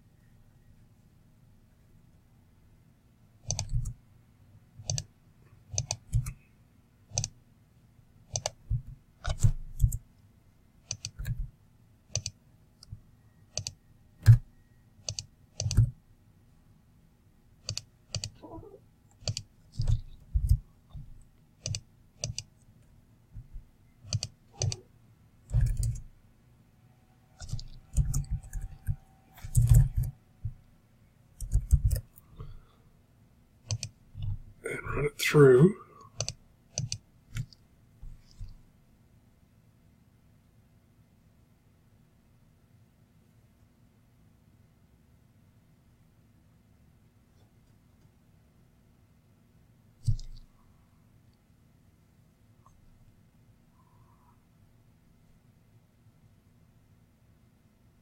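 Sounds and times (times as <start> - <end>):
faint low hum: 0.0 - 58.0
mouse clicks: 3.4 - 4.0, 4.8 - 5.1, 5.7 - 6.4, 7.1 - 7.4, 8.3 - 8.6, 9.2 - 10.0, 10.8 - 11.5, 12.1 - 14.4, 15.0 - 15.9, 17.6 - 18.4, 19.1 - 22.5, 24.1 - 24.8, 25.5 - 26.1, 27.4 - 30.6, 31.4 - 32.5, 33.6 - 34.4, 36.0 - 38.6, 50.0 - 50.5
keyboard taps: 50.0 - 50.4.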